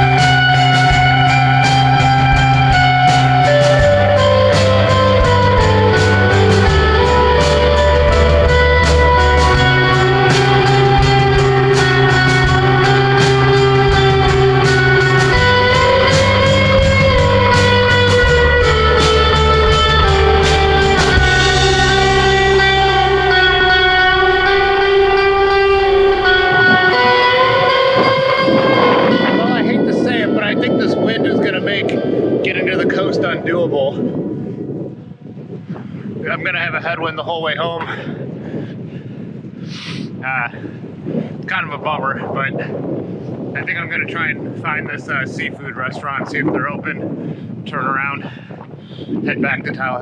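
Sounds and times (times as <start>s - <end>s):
instrumental rock music: 0.0s - 31.1s
sustained guitar notes: 0.0s - 33.2s.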